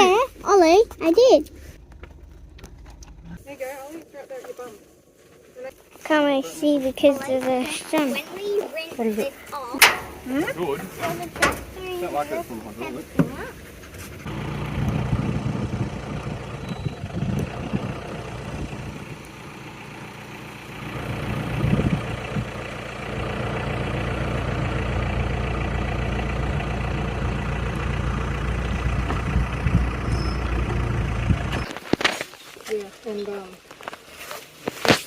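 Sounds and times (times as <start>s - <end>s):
heavy truck engine running: 0.0s - 3.4s, 9.6s - 31.8s.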